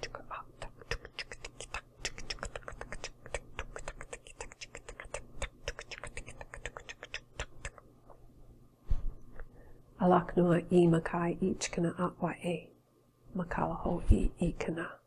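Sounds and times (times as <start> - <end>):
rapid tongue clicks: 0.0 - 8.2.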